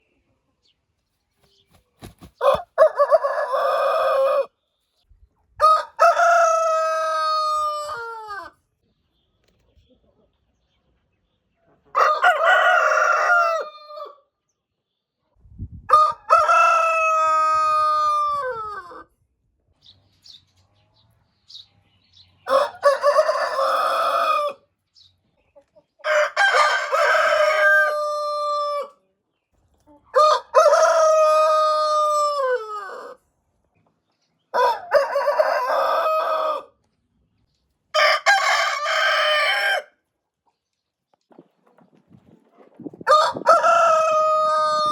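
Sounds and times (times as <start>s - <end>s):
roosters crowing: 2.2s - 4.5s, 5.6s - 8.6s, 11.9s - 14.2s, 15.9s - 19.1s, 22.4s - 24.7s, 26.0s - 29.0s, 30.1s - 33.2s, 34.5s - 36.8s, 37.9s - 40.0s, 43.0s - 44.9s.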